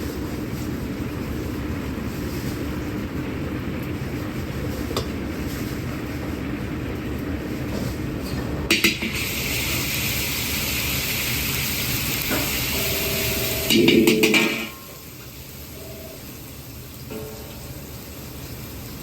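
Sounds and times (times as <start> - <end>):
food sizzling in hot oil: 8.7 - 19.0
metal utensils clattering on pan: 13.7 - 15.0.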